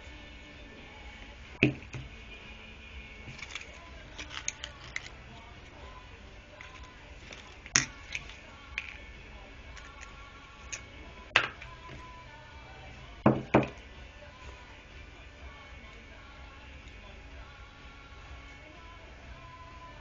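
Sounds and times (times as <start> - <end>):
faint background music: 0.0 - 20.0
tool parts knocking and clicking: 1.6 - 2.1, 3.3 - 5.2, 6.6 - 9.0, 10.7 - 12.0.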